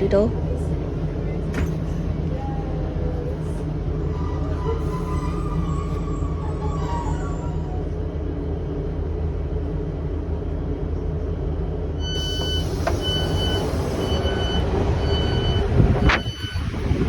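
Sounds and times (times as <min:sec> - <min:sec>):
two-tone warning beep: 0:12.0 - 0:16.8
diesel engine idling: 0:12.0 - 0:17.0.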